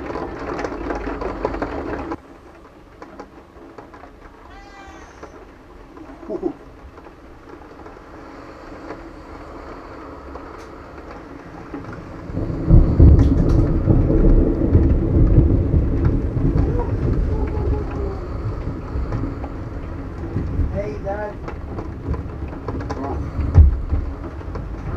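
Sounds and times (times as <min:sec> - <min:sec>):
low rumble of thunder: 0:00.0 - 0:24.9.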